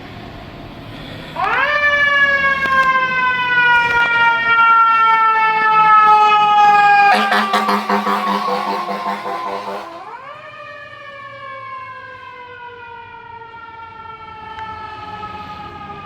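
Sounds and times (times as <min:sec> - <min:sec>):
fire engine siren: 0:01.4 - 0:16.0
harsh horn blast: 0:06.0 - 0:10.4.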